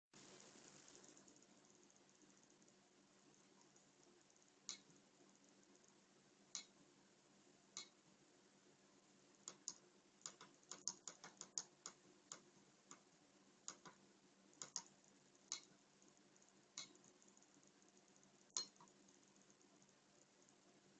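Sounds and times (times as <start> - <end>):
faint low hum: 0.2 - 20.9
small clicks: 3.4 - 5.0, 6.5 - 6.8, 7.8 - 8.0, 9.4 - 14.0, 14.6 - 15.8, 16.4 - 20.6.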